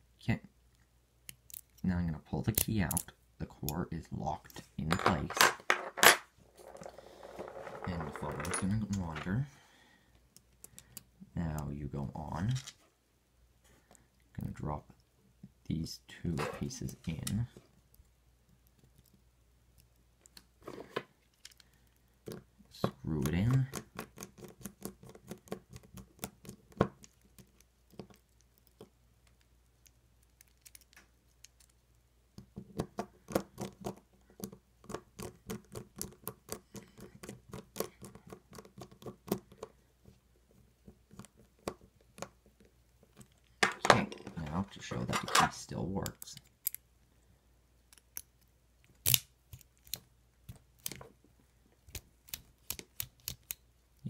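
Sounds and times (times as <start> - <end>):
metal lock parts clicking: 27.0 - 31.8, 45.0 - 46.8.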